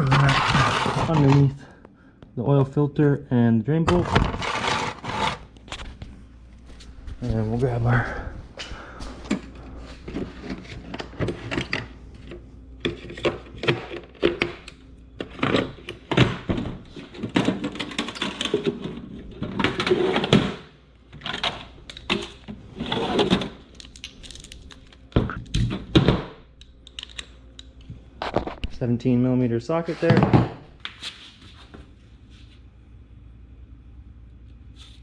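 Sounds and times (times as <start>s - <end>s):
metal sockets clinking and rattling: 21.2s - 26.2s, 26.8s - 27.7s.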